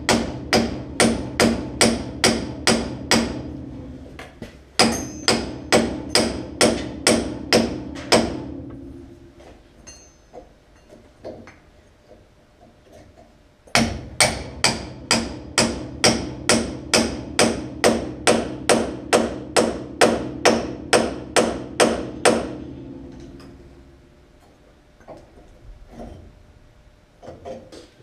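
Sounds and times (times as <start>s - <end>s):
hammer striking steel: 0.0s - 3.5s, 4.8s - 8.5s, 13.7s - 23.6s.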